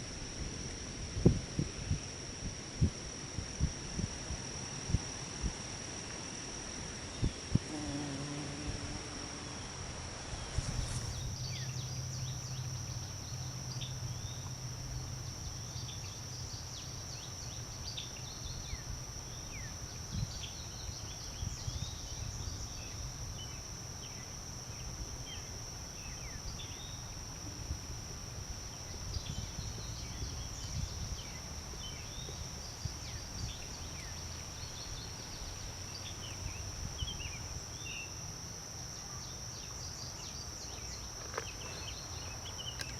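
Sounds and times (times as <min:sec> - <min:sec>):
high insect drone: 0:00.0 - 0:42.9.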